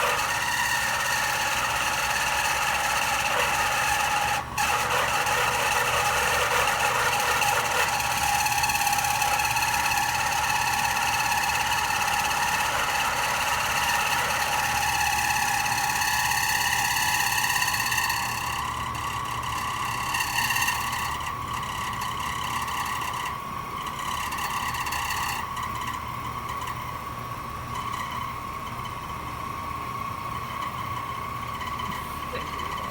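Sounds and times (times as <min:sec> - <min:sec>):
air conditioner whining and humming: 0:00.0 - 0:32.9.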